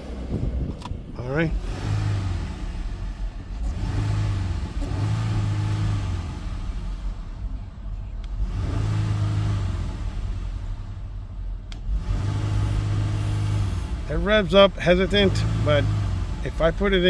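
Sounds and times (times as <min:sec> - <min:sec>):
car engine revving: 0:00.0 - 0:17.0
person speaking: 0:14.1 - 0:17.0.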